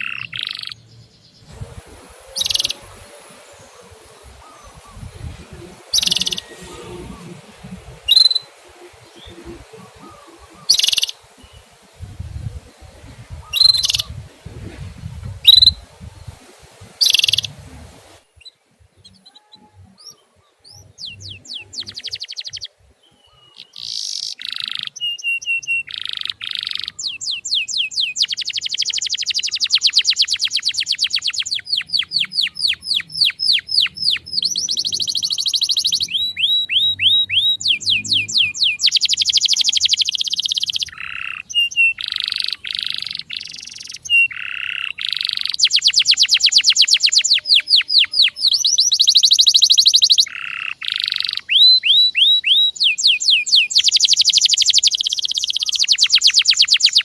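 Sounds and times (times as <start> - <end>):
fast trilled birdsong: 0.0 - 14.4, 15.2 - 57.0
sharp songbird calls: 0.0 - 14.4, 15.0 - 17.7, 18.3 - 57.0
low rumble: 0.9 - 10.5.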